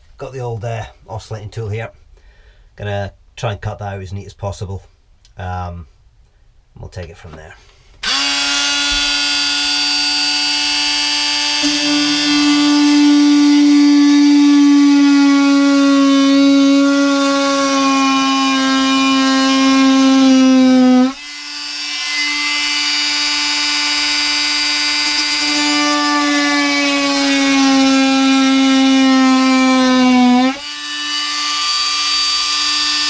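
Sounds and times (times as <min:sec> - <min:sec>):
multi-tool cutting wood: 0:08.0 - 0:33.0.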